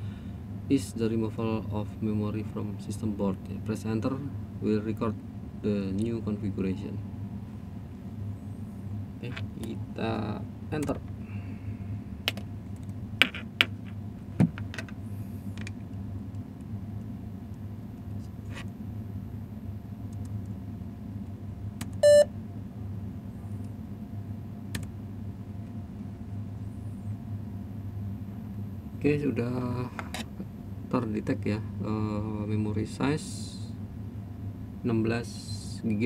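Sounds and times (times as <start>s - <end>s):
steady low hum: 0.0s - 36.0s
short electronic beep: 22.0s - 22.3s.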